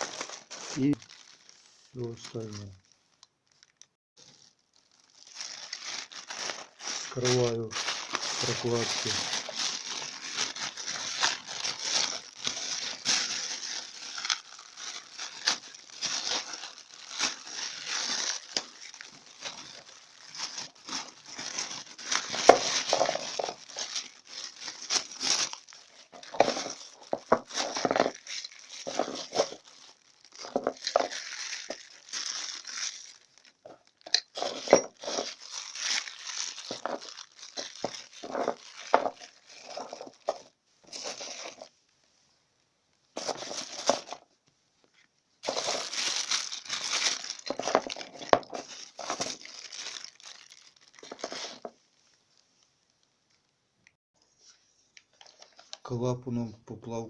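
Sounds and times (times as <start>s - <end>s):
plastic packaging crinkling: 0.0s - 41.8s, 43.1s - 53.5s, 54.9s - 55.9s.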